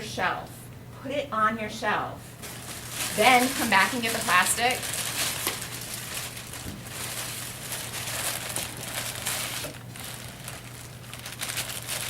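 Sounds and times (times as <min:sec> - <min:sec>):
plastic sheeting crinkling: 0:02.4 - 0:12.0.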